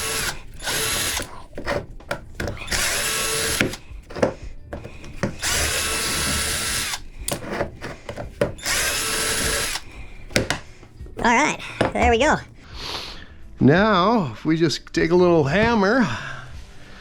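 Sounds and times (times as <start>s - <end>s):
clicks and knocks: 0.0s - 12.6s
power tool whirring on metal: 0.0s - 12.6s.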